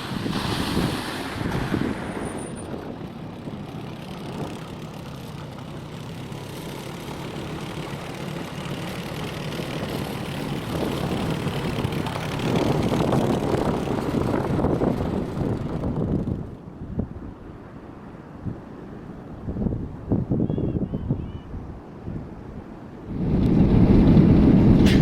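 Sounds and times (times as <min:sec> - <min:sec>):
engine humming: 0:00.0 - 0:16.7, 0:23.0 - 0:25.0.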